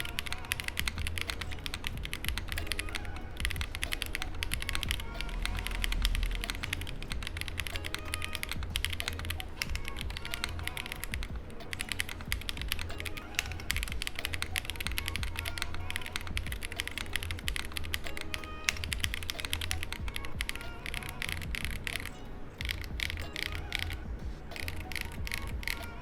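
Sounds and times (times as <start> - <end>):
background music: 0.0 - 26.0
fast typing on mechanical keyboard: 0.0 - 26.0.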